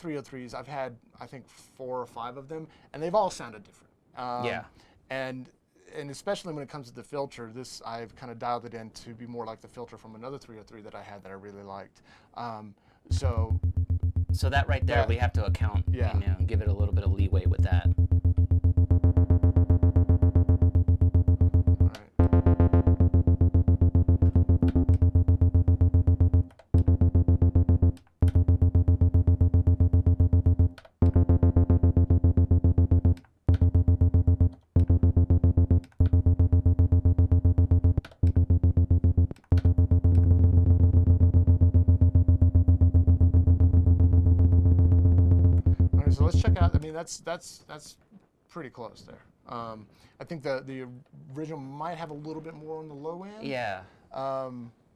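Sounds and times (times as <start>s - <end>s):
acid bass synth notes: 13.1s - 47.0s.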